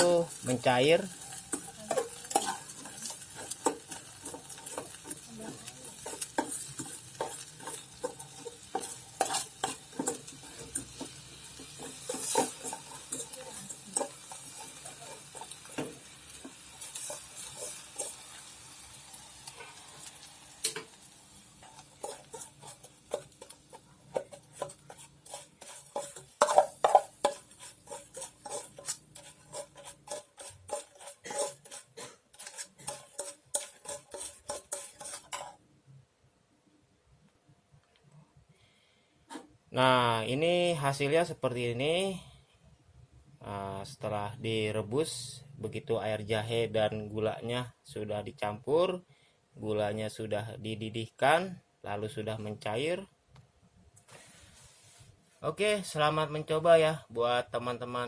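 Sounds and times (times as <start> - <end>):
utensil clinking against a pot: 0.0 - 18.4, 21.6 - 35.6
faint simmering hiss: 0.0 - 58.0.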